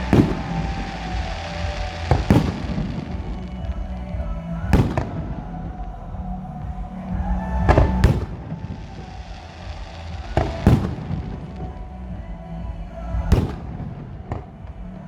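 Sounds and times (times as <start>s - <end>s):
sharp firework crack: 0.0s - 3.4s, 8.0s - 11.7s
fireworks bangs: 0.0s - 12.3s, 13.2s - 14.8s.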